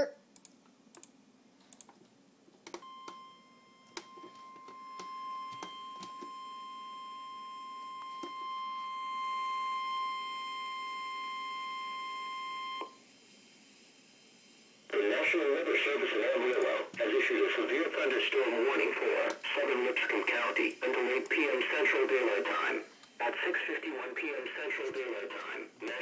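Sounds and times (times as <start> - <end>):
steady alarm tone: 2.8 - 13.0.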